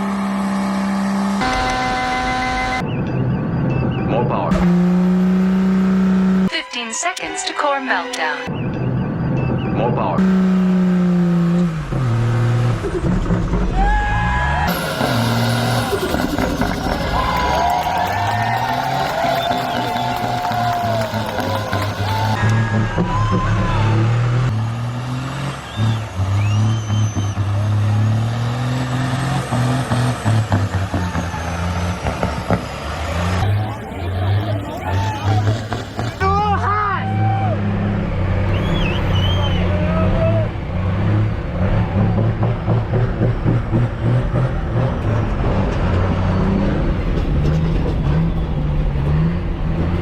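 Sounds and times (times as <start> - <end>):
engine running at full throttle: 0.0 - 2.9, 14.7 - 36.4.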